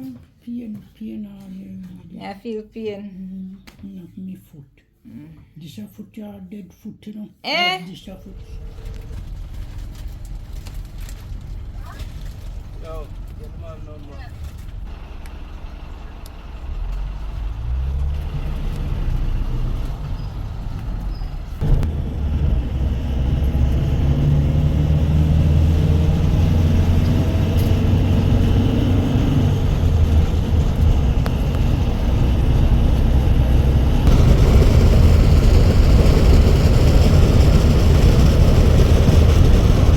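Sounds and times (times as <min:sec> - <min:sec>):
road and wind noise: 0:08.3 - 0:39.9
vehicle engine accelerating: 0:08.4 - 0:39.9.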